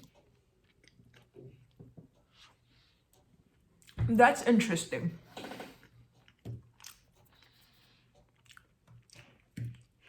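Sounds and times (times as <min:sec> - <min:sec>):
person chewing: 0:00.0 - 0:01.8, 0:05.6 - 0:10.0.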